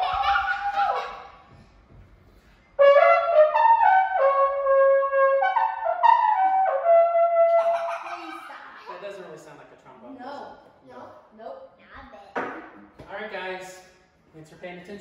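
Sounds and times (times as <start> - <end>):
trumpet melody: 2.8 - 7.7.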